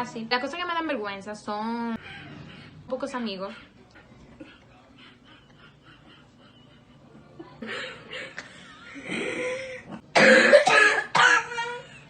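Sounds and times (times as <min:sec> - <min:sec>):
person coughing: 0:10.2 - 0:11.8.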